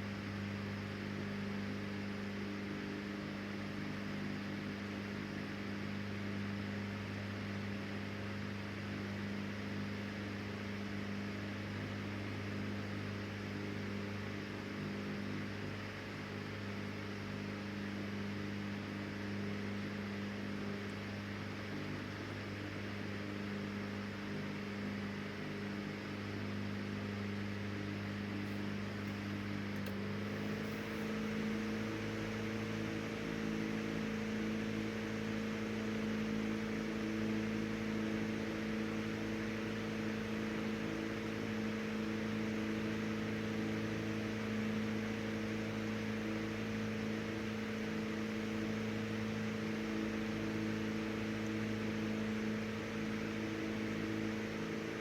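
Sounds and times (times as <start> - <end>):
electric fan running: 0.0 - 55.0
faint click: 28.5 - 30.0.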